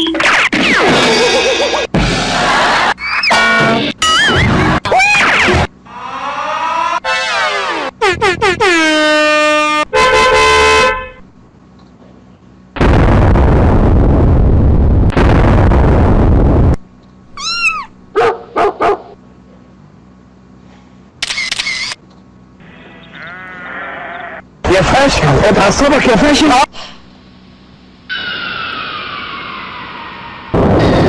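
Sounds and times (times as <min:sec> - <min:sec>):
sliding horn-like tones: 0:06.7 - 0:11.3
burst of noise: 0:12.8 - 0:16.8, 0:28.1 - 0:31.0
rising and falling chirps: 0:17.4 - 0:18.0, 0:28.1 - 0:31.0.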